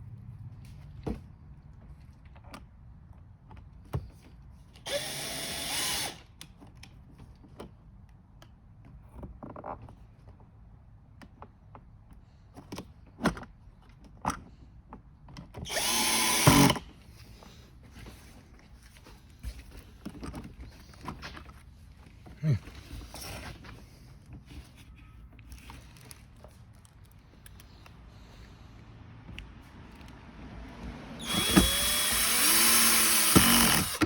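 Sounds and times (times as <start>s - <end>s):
power drill driving screws: 4.8s - 6.3s, 15.6s - 16.9s, 31.2s - 34.0s.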